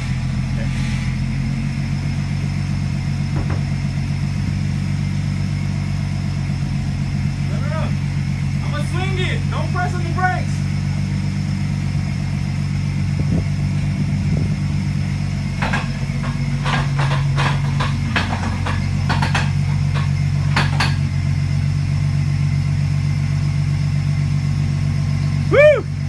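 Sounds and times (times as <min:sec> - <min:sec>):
car engine idling: 0:00.0 - 0:26.0
sharp clicks and knocks: 0:15.6 - 0:21.2.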